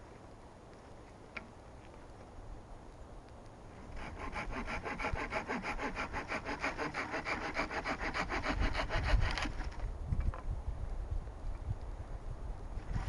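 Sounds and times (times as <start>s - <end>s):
hand saw cutting wood: 4.0s - 9.8s.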